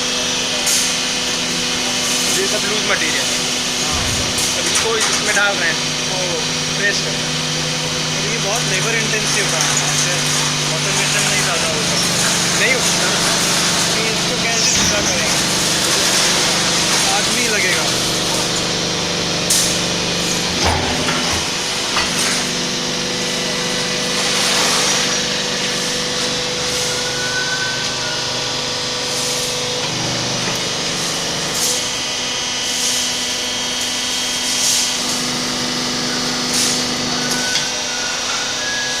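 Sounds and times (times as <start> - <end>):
hydraulic pump whine: 0.0 - 39.0
sharp metallic noises: 12.6 - 16.2.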